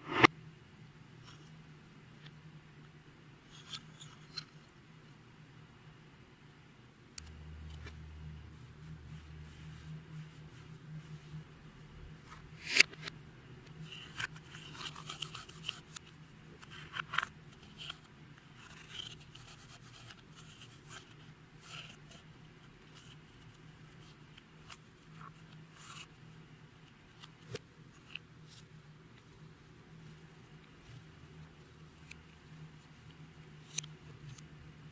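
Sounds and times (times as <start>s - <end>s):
faint low hum: 0.0s - 34.9s
small clicks and scrapes: 3.4s - 4.7s, 12.2s - 29.4s, 30.0s - 34.6s.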